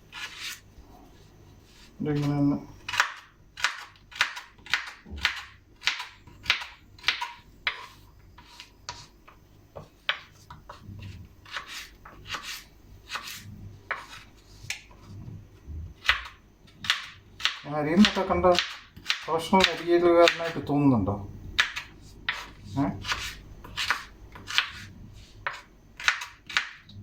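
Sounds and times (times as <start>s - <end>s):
knife chopping on cutting board: 2.9s - 9.1s, 9.8s - 14.8s, 16.0s - 20.6s, 21.6s - 26.9s.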